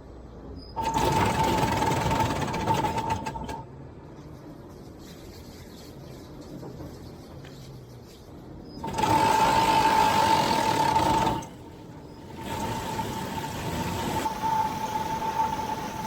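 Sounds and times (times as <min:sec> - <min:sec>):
harvester machinery whining: 0:08.8 - 0:16.0.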